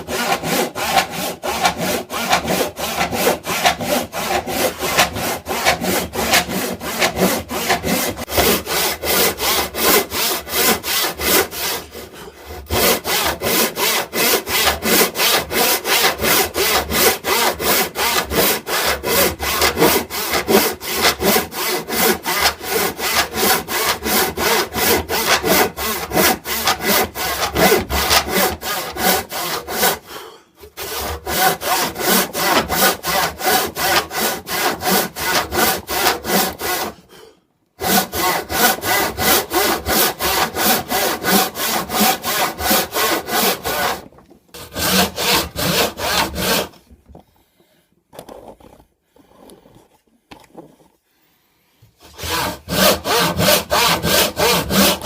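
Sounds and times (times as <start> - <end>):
hand saw cutting wood: 0.0 - 46.9, 52.0 - 55.0.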